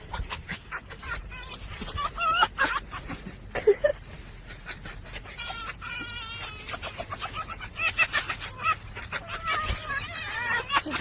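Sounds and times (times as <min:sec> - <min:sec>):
animal calling: 0:04.5 - 0:11.0.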